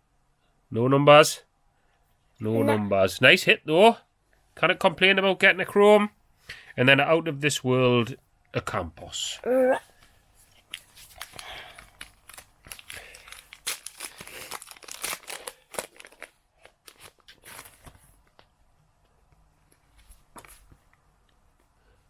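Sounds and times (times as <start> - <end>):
plastic wrapper crinkling and tearing: 10.7 - 17.9.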